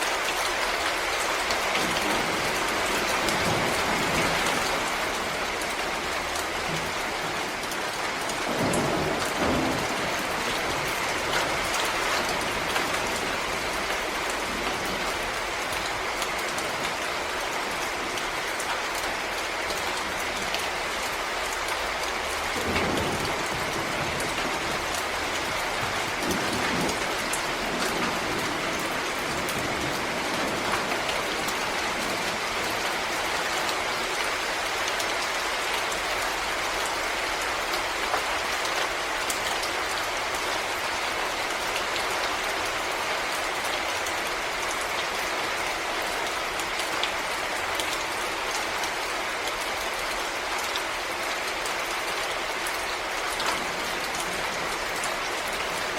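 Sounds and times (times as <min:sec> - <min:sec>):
rain falling: 0:00.0 - 0:55.9
raindrops ticking: 0:01.8 - 0:35.2, 0:53.0 - 0:55.9.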